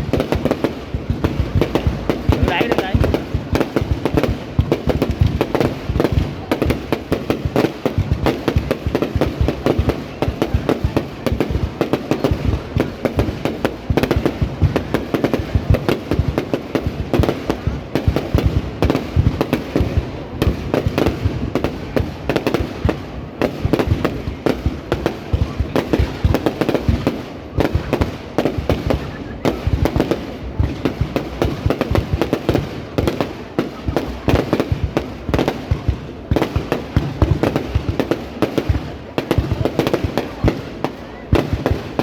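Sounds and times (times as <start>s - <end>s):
fireworks bangs: 0.0s - 42.0s.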